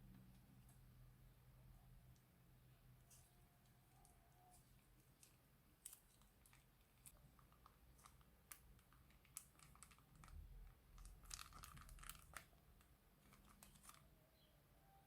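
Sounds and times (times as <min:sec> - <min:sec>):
plastic bag crinkling: 0:03.9 - 0:14.1.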